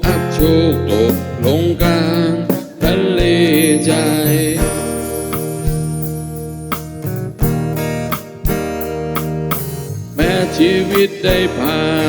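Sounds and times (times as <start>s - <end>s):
strummed acoustic guitar chords: 0.0s - 12.0s
drum hits: 1.8s - 10.4s.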